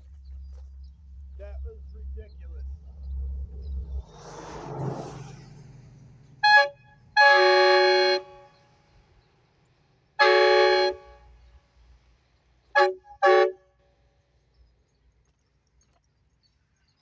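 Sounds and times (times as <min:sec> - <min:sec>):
air horn blasts: 0:06.4 - 0:08.8, 0:10.2 - 0:11.5, 0:12.7 - 0:13.7.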